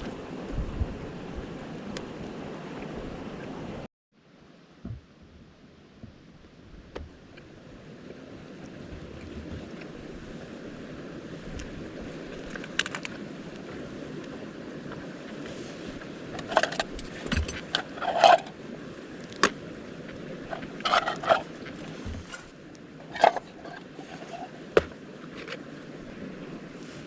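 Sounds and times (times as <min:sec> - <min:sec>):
low rush of wind: 0:00.0 - 0:27.0
metal gear clinking: 0:16.5 - 0:18.5.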